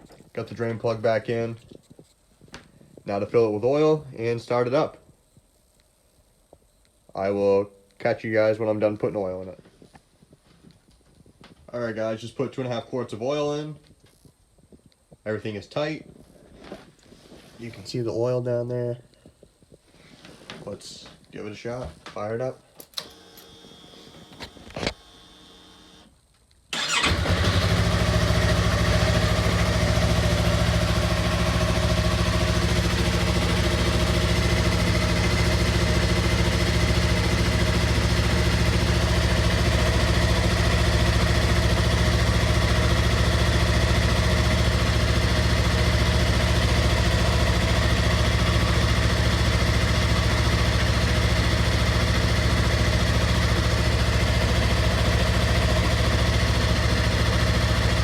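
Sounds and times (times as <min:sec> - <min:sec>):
motorcycle engine idling: 0:26.8 - 0:58.0.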